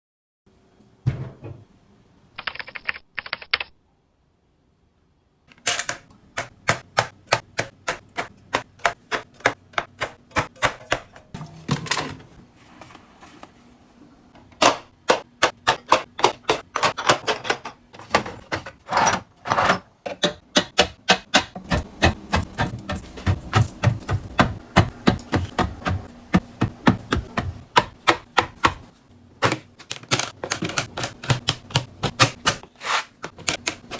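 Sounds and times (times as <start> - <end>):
packaging clicks and knocks: 29.4 - 32.6.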